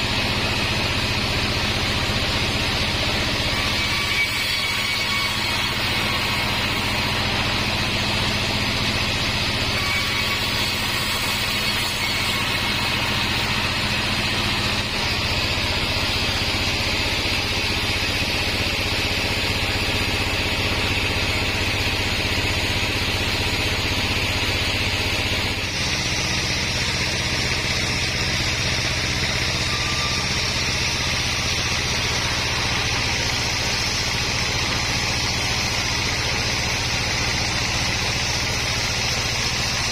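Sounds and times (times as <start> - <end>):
band sawmill motor hum: 0.0 - 39.9
saw blade hissing: 25.8 - 39.9.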